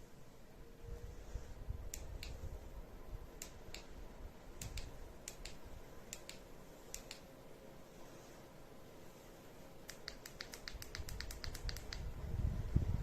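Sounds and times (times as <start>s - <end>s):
sharp dry clicks: 1.9s - 2.4s, 3.4s - 4.0s, 4.6s - 7.3s, 9.8s - 12.1s.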